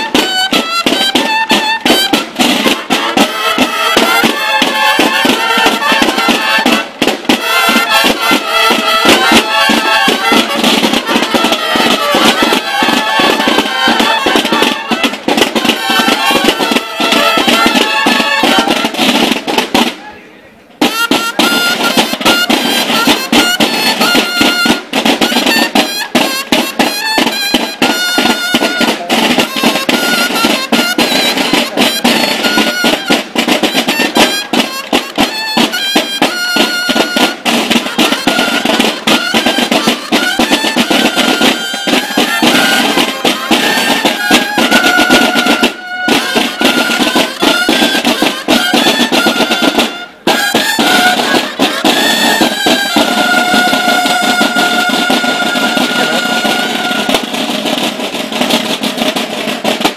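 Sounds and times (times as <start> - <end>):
fast dense drumming: 0.0 - 20.0, 20.8 - 59.9
high held melody: 0.0 - 20.0, 20.6 - 59.9.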